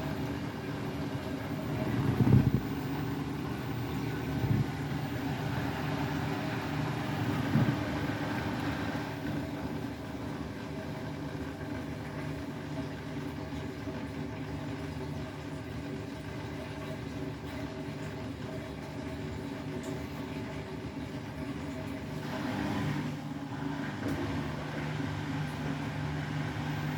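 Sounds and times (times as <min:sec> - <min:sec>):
washing machine motor humming: 0:00.0 - 0:26.9
washing machine drum thumps: 0:07.2 - 0:08.2.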